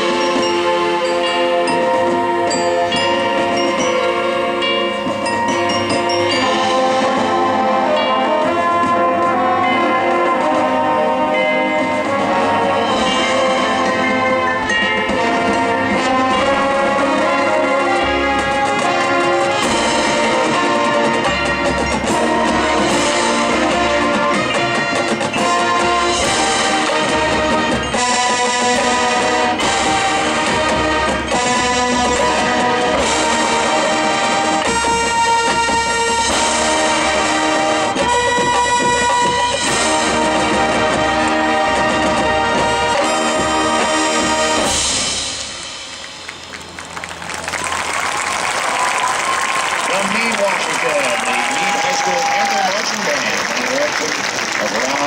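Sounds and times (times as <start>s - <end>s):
brass chords: 0.0s - 55.0s
marching drums: 11.7s - 55.0s
crowd applause: 46.0s - 55.0s.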